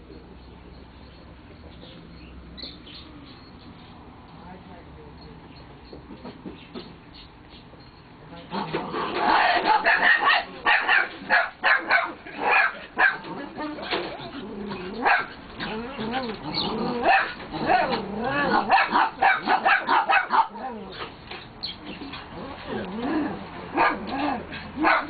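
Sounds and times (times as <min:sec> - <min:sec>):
dogs whining: 0:00.0 - 0:04.1, 0:05.6 - 0:25.0
dogs barking excitedly: 0:05.8 - 0:25.0.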